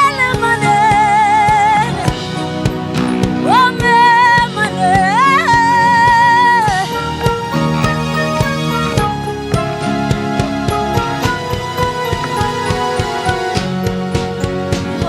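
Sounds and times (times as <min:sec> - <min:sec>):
band playing gospel music: 0:06.8 - 0:15.0.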